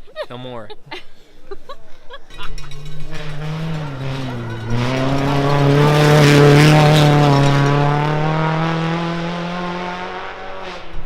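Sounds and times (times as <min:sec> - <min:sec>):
rally car engine at high revs: 0:02.6 - 0:11.0.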